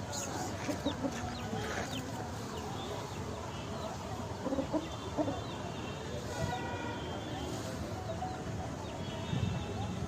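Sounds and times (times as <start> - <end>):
chickens clucking: 0.2 - 2.2, 4.4 - 5.4.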